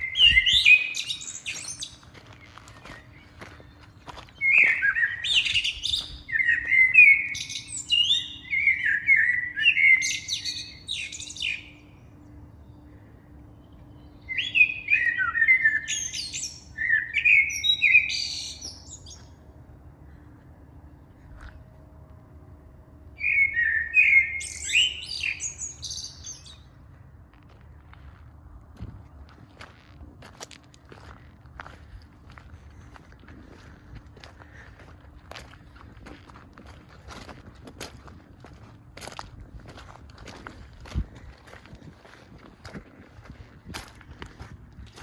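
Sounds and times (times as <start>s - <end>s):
songbird warbling: 0.0s - 2.1s, 2.8s - 21.6s, 23.2s - 26.6s.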